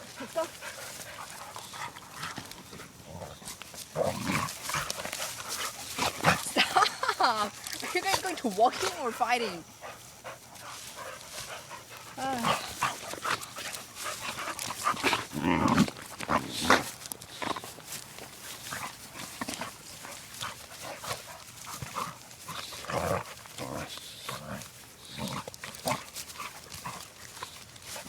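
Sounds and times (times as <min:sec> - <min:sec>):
scuffle of paws and bodies: 0:00.0 - 0:28.0
puppies growling and yipping: 0:11.7 - 0:17.8.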